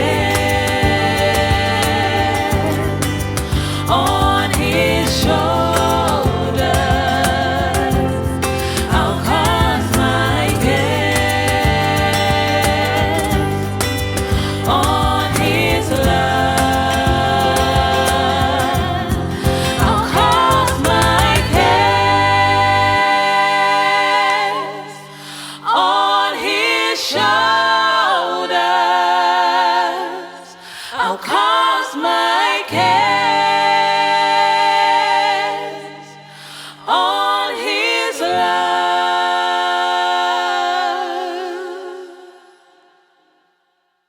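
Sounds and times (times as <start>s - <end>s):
beat: 0.0s - 23.0s
gospel choir singing: 0.0s - 43.5s.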